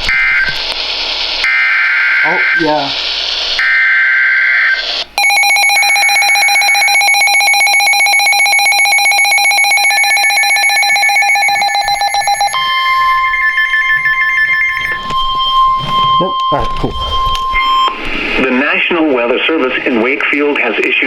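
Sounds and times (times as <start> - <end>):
rapidly pulsing electronic alarm beep: 5.2 - 19.3
steady alarm tone: 5.2 - 19.7
data tones burst: 5.2 - 20.0.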